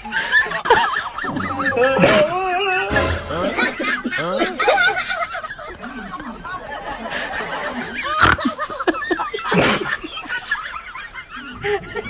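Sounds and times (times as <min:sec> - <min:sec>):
people laughing: 0:00.0 - 0:12.0
sudden sharp sound: 0:01.2 - 0:03.6.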